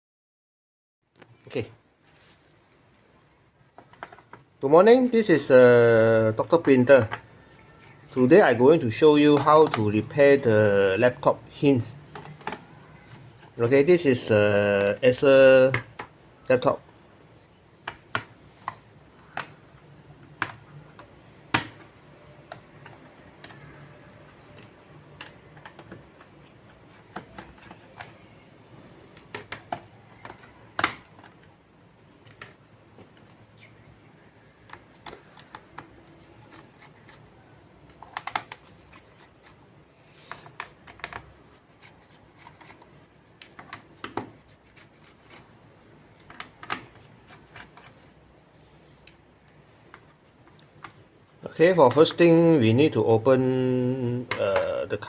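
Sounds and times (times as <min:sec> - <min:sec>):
plastic laptop clicks and taps: 0:17.8 - 0:19.6, 0:20.3 - 0:23.7, 0:29.1 - 0:31.5, 0:37.8 - 0:38.7.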